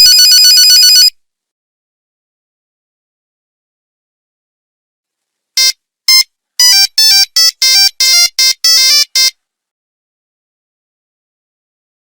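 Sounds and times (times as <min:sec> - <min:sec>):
monophonic phone ringtone: 0:00.0 - 0:01.1, 0:05.6 - 0:09.3.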